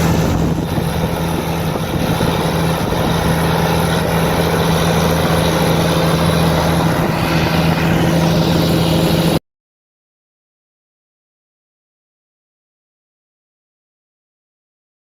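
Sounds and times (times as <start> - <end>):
tractor diesel engine running: 0.0 - 9.4.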